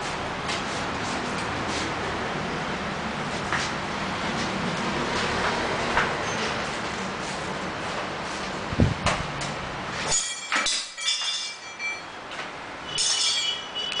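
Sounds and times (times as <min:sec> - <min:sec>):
workshop background noise: 0:00.0 - 0:14.0
metallic clinks: 0:10.1 - 0:12.2, 0:12.9 - 0:14.0.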